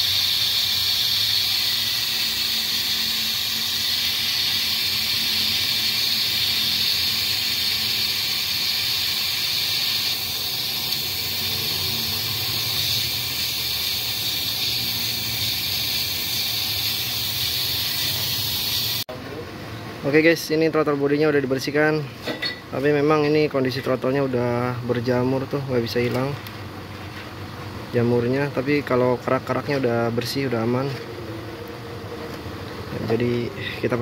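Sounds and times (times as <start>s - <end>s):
pressurised spray jet hissing: 0.0s - 19.1s.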